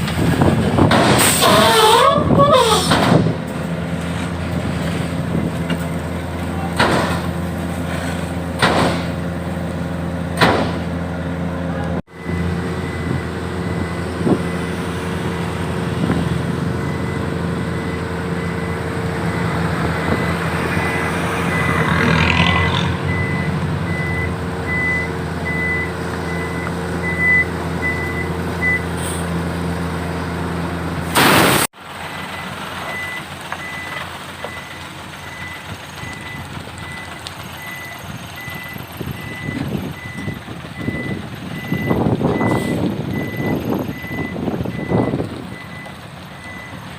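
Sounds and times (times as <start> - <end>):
diesel truck engine running: 0.0 - 46.9
reversing alarm beeping: 12.1 - 15.5, 20.0 - 28.9, 32.3 - 46.8.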